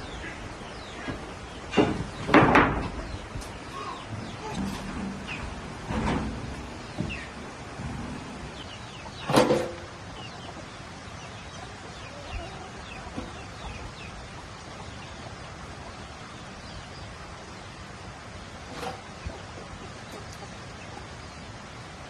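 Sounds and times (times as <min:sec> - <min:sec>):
chicken clucking: 0:06.7 - 0:07.5, 0:08.2 - 0:14.2, 0:18.7 - 0:21.2.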